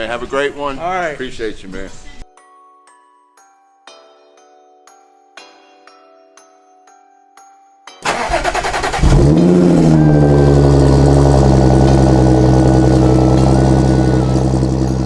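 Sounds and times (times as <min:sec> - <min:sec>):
car engine starting and idling: 0:08.0 - 0:15.0.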